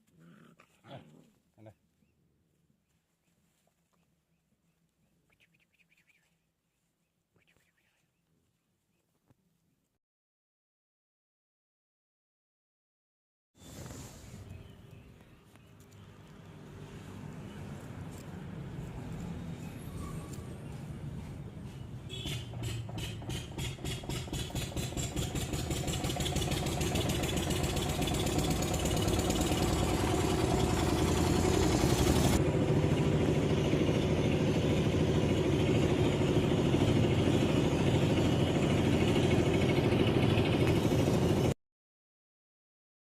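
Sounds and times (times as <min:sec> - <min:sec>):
engine starting and running: 0:19.2 - 0:41.6.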